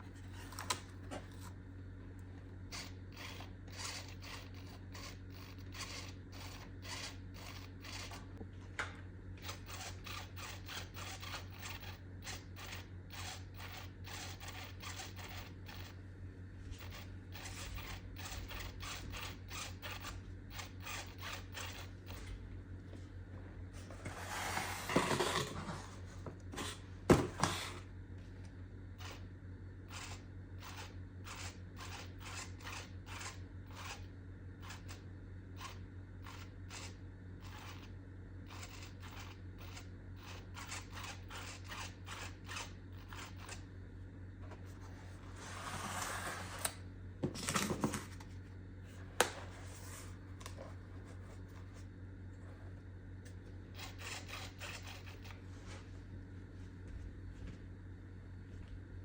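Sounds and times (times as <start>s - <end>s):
scissors cutting cardboard: 24.0s - 27.8s.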